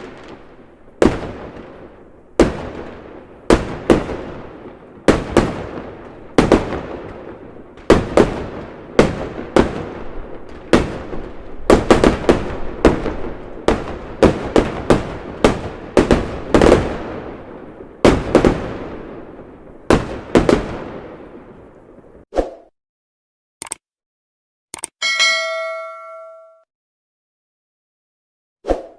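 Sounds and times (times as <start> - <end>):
fireworks bangs echoing: 0.0 - 22.2.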